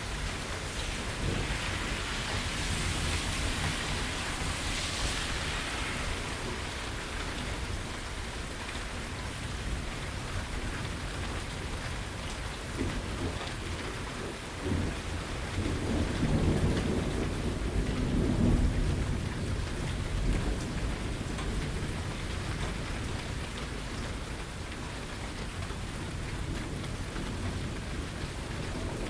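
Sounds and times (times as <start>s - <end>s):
thunder rumbling: 0.0s - 11.1s, 12.8s - 23.4s
rain falling: 0.0s - 29.0s.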